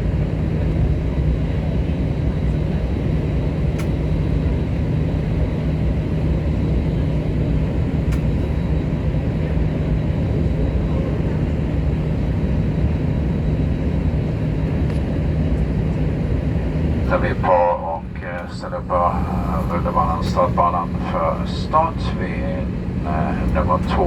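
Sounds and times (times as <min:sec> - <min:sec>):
airplane cabin engine noise: 0:00.0 - 0:24.0
low hum: 0:16.7 - 0:24.0.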